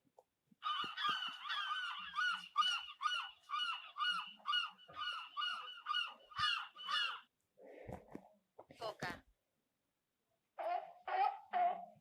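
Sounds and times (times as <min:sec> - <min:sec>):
gull calling: 0:00.6 - 0:07.3.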